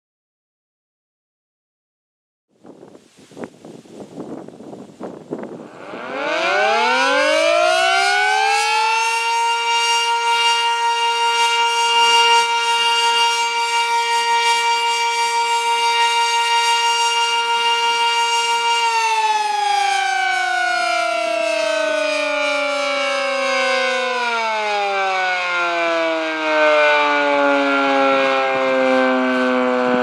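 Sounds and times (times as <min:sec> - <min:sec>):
wind noise: 0:02.5 - 0:08.1, 0:29.3 - 0:30.0
warning siren wailing: 0:05.3 - 0:30.0.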